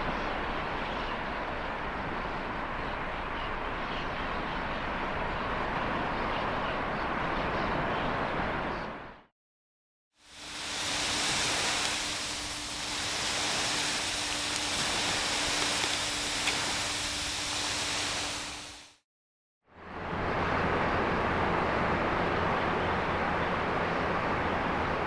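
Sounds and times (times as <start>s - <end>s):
low rumble of surf: 0.0s - 9.2s, 10.3s - 18.9s, 19.7s - 25.0s
ocean surf hissing: 10.2s - 19.0s.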